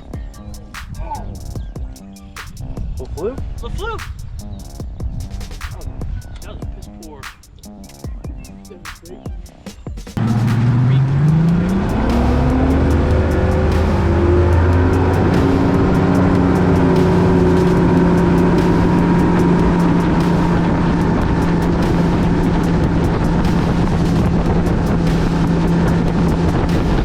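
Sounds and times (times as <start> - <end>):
outboard motor running: 10.2 - 27.0
wind and water rushing: 10.2 - 27.0.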